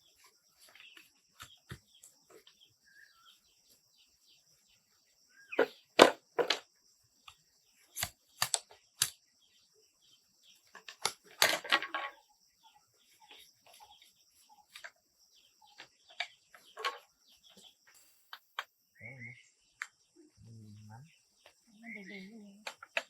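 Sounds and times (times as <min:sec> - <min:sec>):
wooden knocks and clatter: 0:05.6 - 0:06.7, 0:10.7 - 0:12.2, 0:15.7 - 0:17.7
high insect drone: 0:12.1 - 0:23.0.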